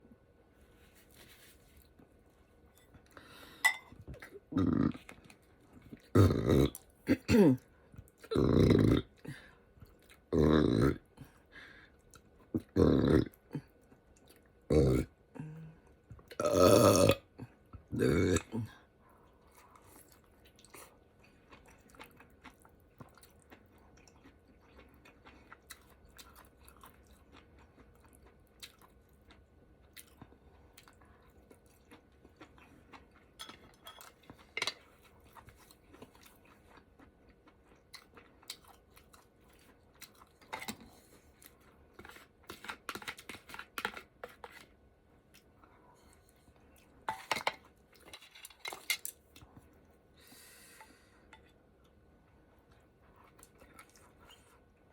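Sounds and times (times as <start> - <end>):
chewing and crunching: 0.8 - 16.5, 17.2 - 50.0, 51.2 - 54.9.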